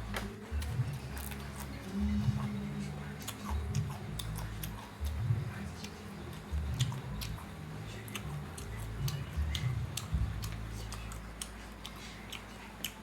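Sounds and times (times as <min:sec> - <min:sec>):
close chewing: 0:00.0 - 0:13.0
wet mouth clicks: 0:03.2 - 0:05.2.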